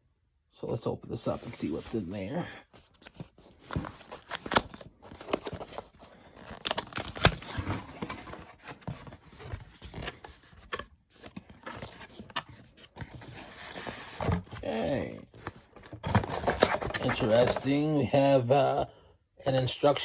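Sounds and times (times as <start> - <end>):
cardboard box handling: 2.8 - 17.9.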